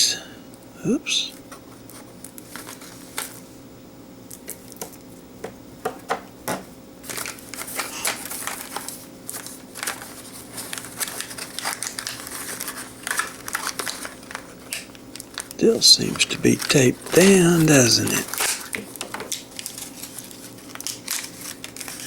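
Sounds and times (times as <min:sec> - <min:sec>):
packaging rustling and crinkling: 0:02.0 - 0:03.4, 0:07.0 - 0:22.0.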